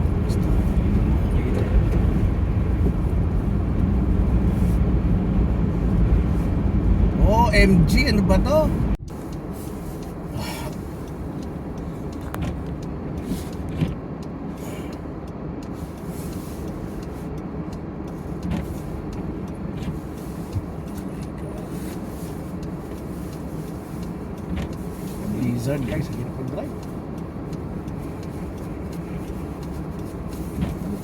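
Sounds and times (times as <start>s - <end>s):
car engine and road noise: 0.0s - 31.0s
light clicks and taps: 9.2s - 31.0s.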